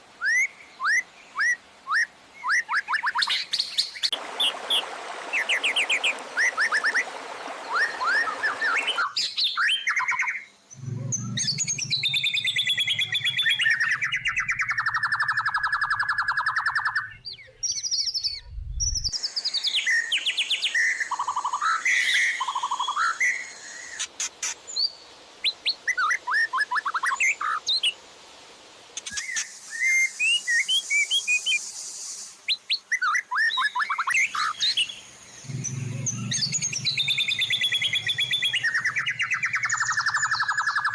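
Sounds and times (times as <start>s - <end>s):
songbird whistles and trills: 0.2s - 4.8s, 5.4s - 24.0s, 29.0s - 40.9s
low hum: 10.7s - 16.3s, 35.1s - 40.6s.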